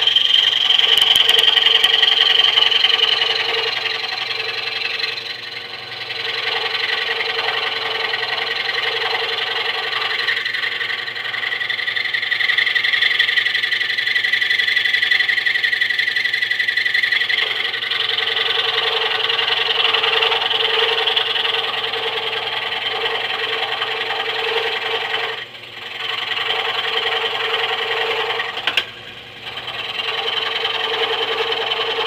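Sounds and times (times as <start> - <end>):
scroll saw cutting wood: 0.0 - 32.0
sharp click: 28.6 - 29.0.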